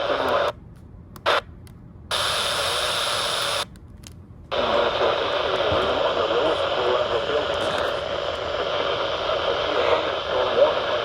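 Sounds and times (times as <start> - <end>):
radio static broadcast: 0.0 - 0.6, 2.1 - 3.6, 4.5 - 11.0.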